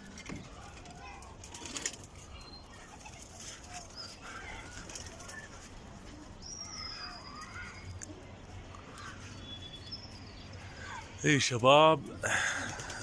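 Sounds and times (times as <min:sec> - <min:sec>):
birds chirping: 0:00.0 - 0:13.0
pigeons cooing: 0:12.1 - 0:13.0.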